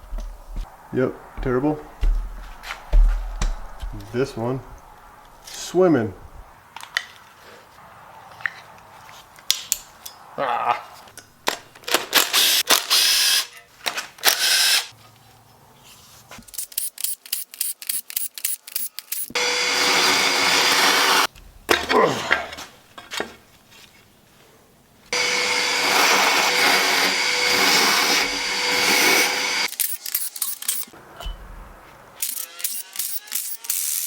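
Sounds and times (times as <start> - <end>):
power drill running: 12.4 - 13.5, 14.3 - 14.9, 19.3 - 21.3, 25.1 - 29.9.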